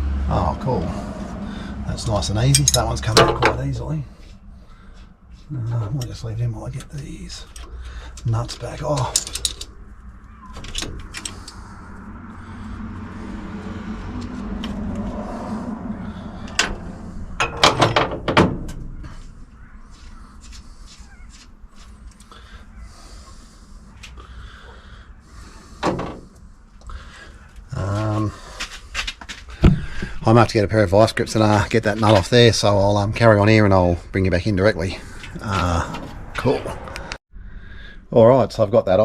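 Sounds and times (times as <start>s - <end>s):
metal clanks: 2.4s - 3.9s, 7.4s - 9.8s, 16.5s - 19.2s
metal clicks and scraping: 6.8s - 11.6s, 16.4s - 19.2s.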